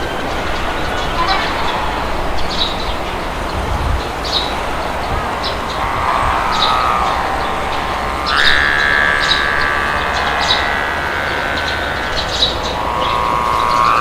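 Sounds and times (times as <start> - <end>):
lower whistling tone: 0.0 - 14.0
small birds chirping: 0.0 - 14.0
wind noise: 0.0 - 14.0
high whistling tone: 4.9 - 14.0.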